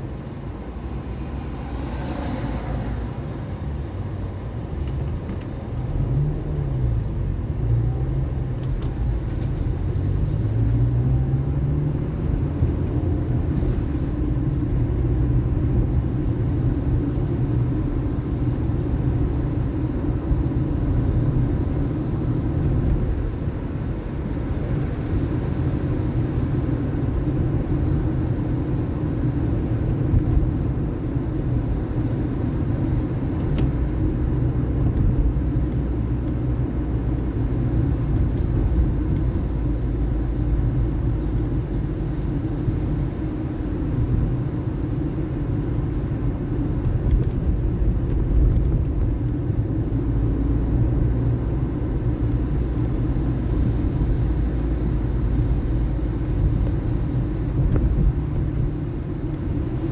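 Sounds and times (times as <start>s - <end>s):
car engine and road rumble: 0.0s - 59.9s.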